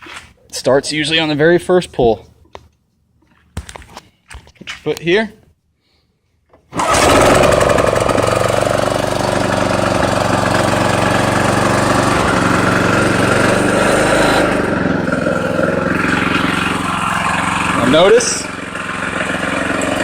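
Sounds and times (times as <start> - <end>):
lawn mower engine pull-started: 6.6 - 20.0
mower engine running: 6.7 - 20.0.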